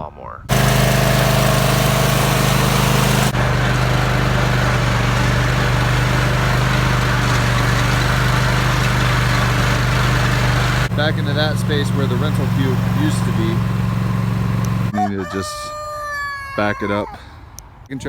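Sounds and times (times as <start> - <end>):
riding lawn mower engine running: 0.5 - 15.0.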